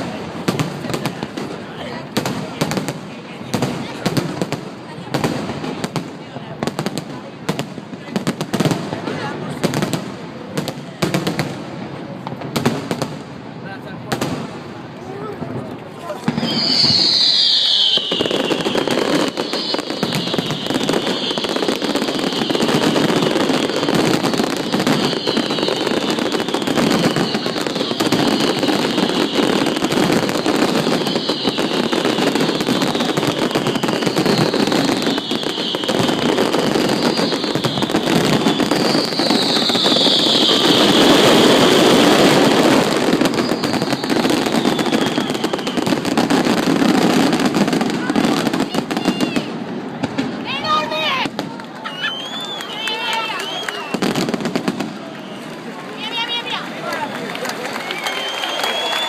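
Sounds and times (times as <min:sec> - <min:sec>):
fireworks crackling and banging: 0:00.0 - 0:59.0
high falling whistle: 0:16.2 - 0:46.0, 0:51.9 - 0:54.1, 0:57.8 - 0:59.0.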